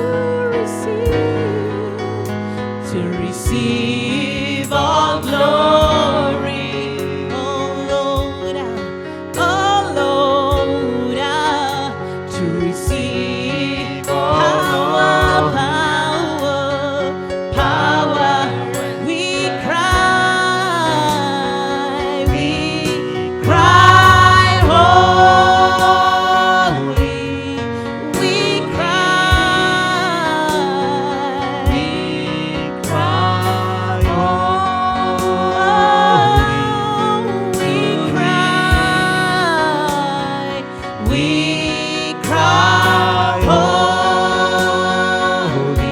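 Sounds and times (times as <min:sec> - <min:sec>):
gospel singing: 0:00.0 - 0:45.9
sustained keyboard chords: 0:00.0 - 0:45.9
drum hits: 0:23.4 - 0:27.2.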